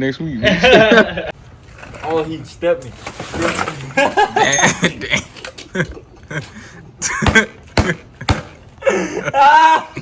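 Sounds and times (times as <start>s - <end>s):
men laughing loudly: 0.4s - 1.4s, 3.8s - 10.0s
man exclaiming: 9.3s - 10.0s.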